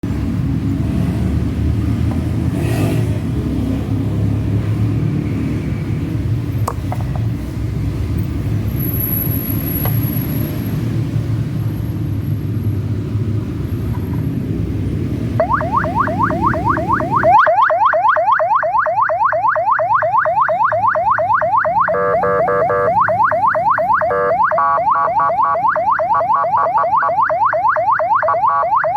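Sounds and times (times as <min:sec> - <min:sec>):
electronic siren sweeping: 0:15.4 - 0:28.9.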